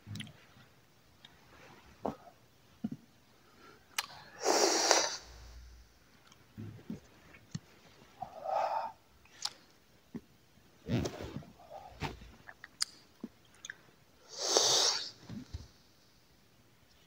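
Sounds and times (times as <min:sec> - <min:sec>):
mouth clicks: 0:03.9 - 0:05.2, 0:09.2 - 0:09.7, 0:12.4 - 0:13.8
breathy smoking puffs: 0:04.1 - 0:05.8, 0:14.2 - 0:15.8.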